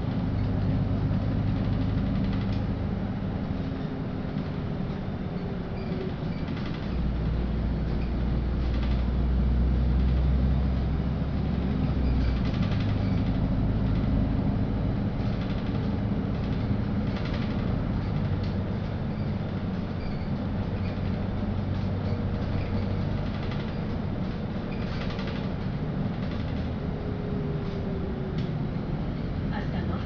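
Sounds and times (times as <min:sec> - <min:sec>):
bus engine and road drone: 0:00.0 - 0:30.0
faint rattles: 0:11.8 - 0:14.3, 0:15.1 - 0:30.0.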